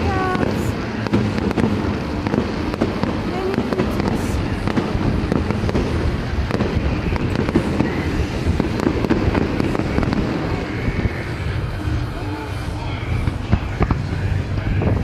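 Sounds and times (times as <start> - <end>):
fireworks crackling: 0.0 - 15.0
fireworks detonations rumbling: 0.0 - 15.0.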